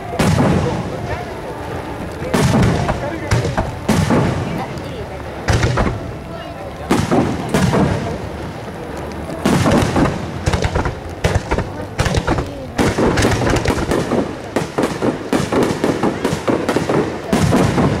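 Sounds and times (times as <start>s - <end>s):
fireworks crackling reports: 0.0s - 18.0s
fireworks shells bursting: 2.2s - 4.7s, 5.4s - 6.1s, 9.4s - 18.0s.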